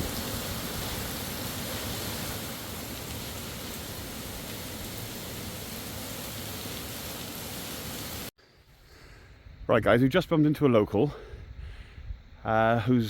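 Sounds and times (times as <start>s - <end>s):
rush of falling water: 0.0s - 8.3s.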